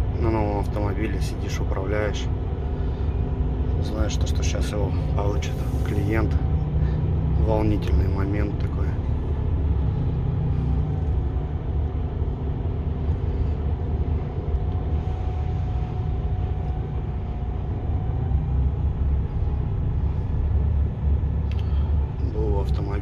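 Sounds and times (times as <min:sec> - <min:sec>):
faint steady whine: 0:00.0 - 0:23.0
truck engine rumble: 0:00.0 - 0:23.0.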